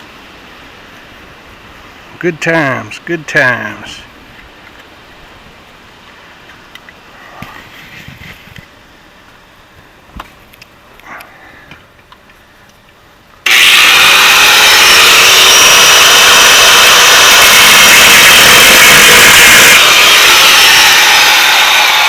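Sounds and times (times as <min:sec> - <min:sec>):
cut-off wheel grinding sheet metal: 0:13.4 - 0:22.0.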